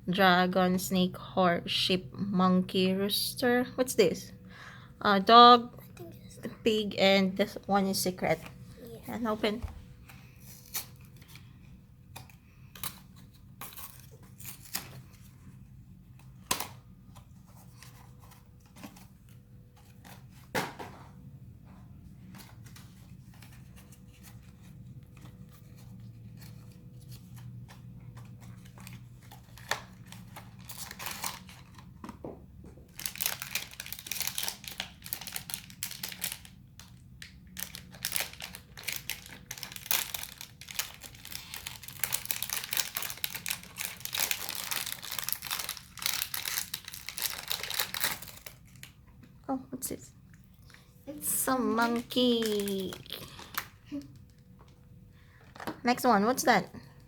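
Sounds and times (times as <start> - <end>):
wrapper tearing and crinkling: 10.5 - 11.4, 12.2 - 15.4, 22.6 - 31.9, 32.9 - 49.0, 52.0 - 54.4.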